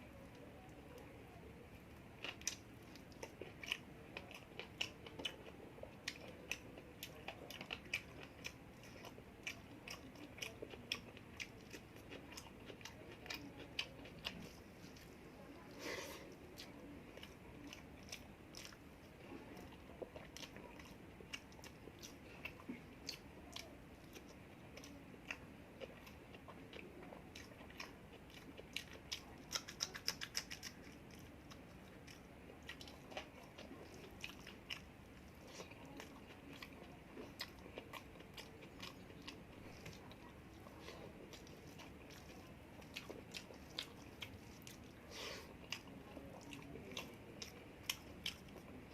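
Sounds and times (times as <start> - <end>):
person chewing food: 2.2 - 48.9
wet mouth clicks: 29.5 - 30.8.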